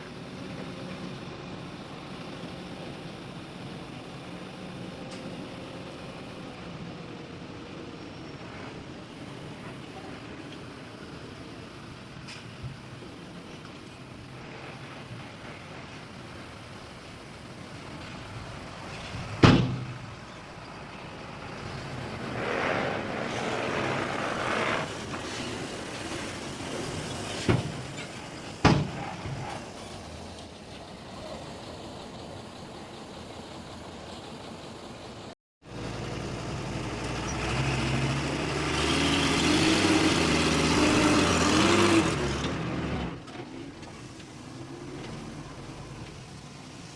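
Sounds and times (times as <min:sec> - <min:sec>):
diesel engine running: 0:00.0 - 0:46.9
engine revving: 0:35.7 - 0:43.4.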